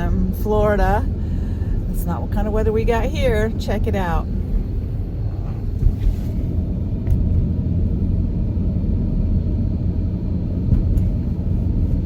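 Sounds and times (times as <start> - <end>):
car engine: 0.0 - 12.0
road noise: 0.0 - 12.0.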